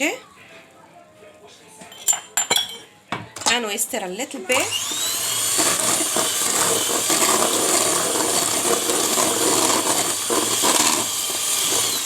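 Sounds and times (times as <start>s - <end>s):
beaters churning batter: 4.4s - 12.0s
electric hand mixer whining: 4.5s - 12.0s.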